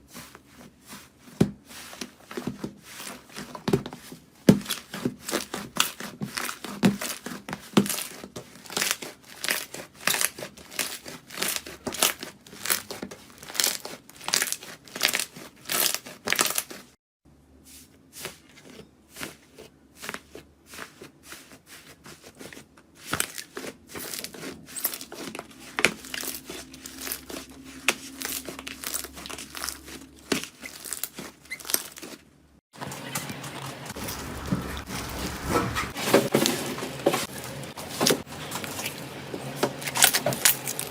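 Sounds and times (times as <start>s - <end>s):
slime crackling and popping: 25.9s - 32.2s.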